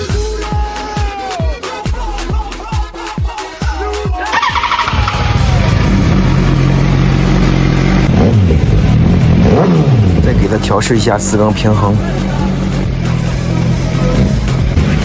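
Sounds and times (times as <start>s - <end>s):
motorcycle engine starting and idling: 4.3s - 10.5s.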